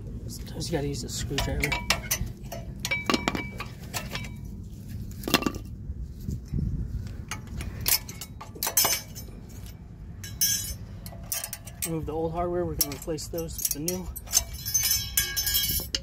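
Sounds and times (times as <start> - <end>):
metal clinks and scrapes: 1.0 - 6.6, 7.2 - 16.0
metal ringing: 1.3 - 4.5, 7.4 - 16.0.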